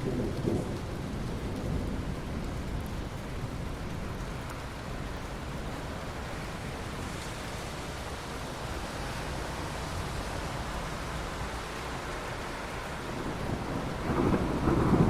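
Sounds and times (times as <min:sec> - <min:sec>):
low thunder rumble: 0:00.0 - 0:04.4, 0:13.0 - 0:15.0
steady rain falling: 0:00.0 - 0:15.0.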